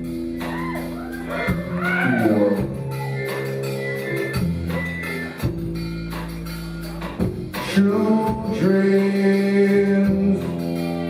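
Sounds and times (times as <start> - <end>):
live band instrumental music: 0.0 - 11.0.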